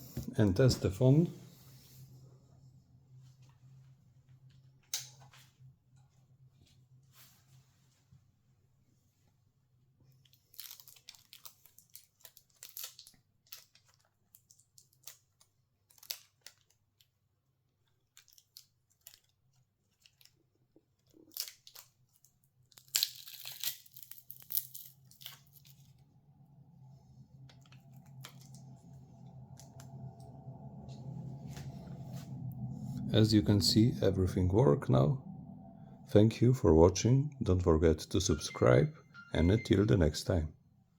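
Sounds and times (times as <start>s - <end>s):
background music: 37.4s - 40.1s.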